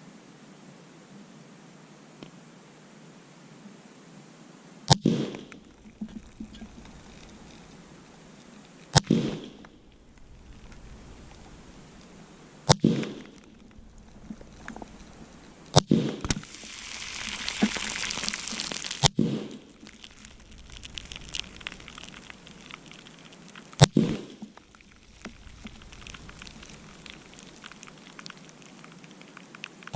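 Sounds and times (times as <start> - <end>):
rifle shots with echo: 4.9 - 5.5, 9.0 - 9.6, 12.7 - 13.3, 15.8 - 16.4
fizzing and crackling: 5.4 - 29.9.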